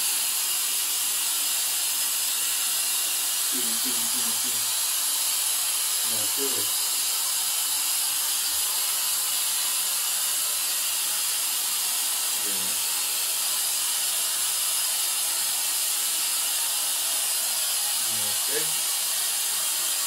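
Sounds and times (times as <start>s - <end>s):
jet blower rushing air: 2.9s - 9.7s, 12.3s - 13.8s, 17.8s - 20.0s.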